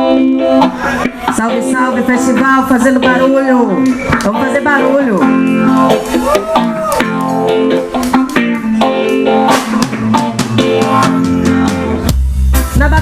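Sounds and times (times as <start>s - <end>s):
electric guitar: 0.0s - 13.0s
drum kit: 3.7s - 13.0s.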